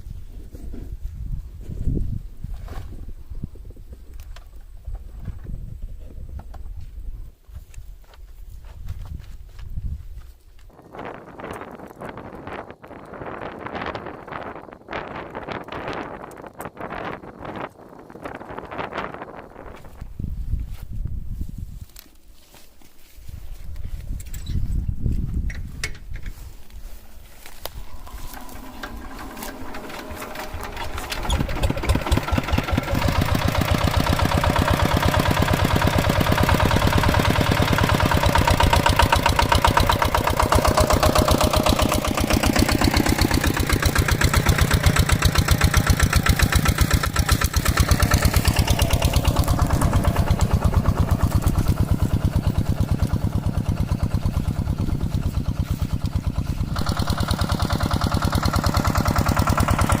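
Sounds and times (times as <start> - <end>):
diesel engine running: 26.3 - 60.0.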